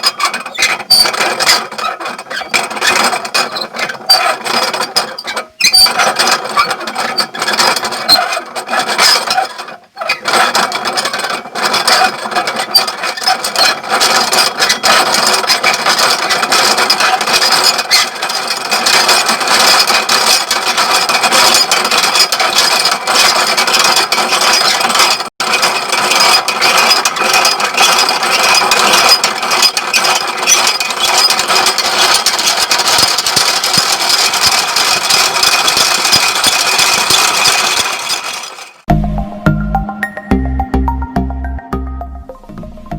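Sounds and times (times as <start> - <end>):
mill gears grinding and rattling: 0.0 - 38.8.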